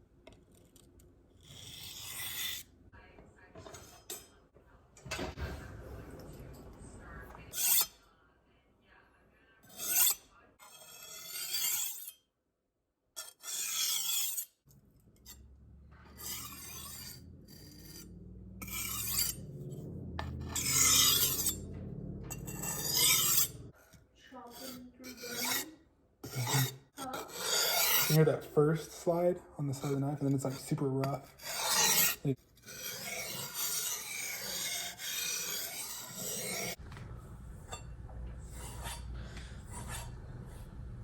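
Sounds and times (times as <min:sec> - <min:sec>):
knife sliding on whetstone: 0:01.4 - 0:02.7, 0:09.7 - 0:12.2, 0:13.2 - 0:14.6, 0:16.1 - 0:21.6, 0:22.3 - 0:29.0, 0:29.7 - 0:36.8, 0:37.7 - 0:40.2.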